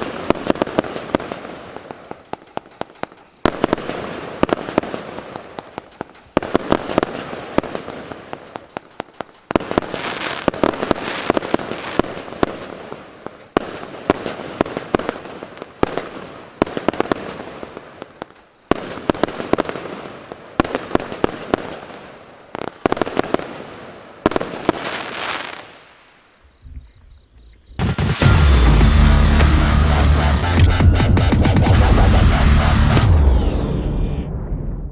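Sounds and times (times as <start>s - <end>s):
fireworks barrage reports: 0.0s - 13.0s, 27.8s - 34.9s
fireworks hiss and crackle: 0.0s - 26.8s
loud electronic music: 27.8s - 34.3s.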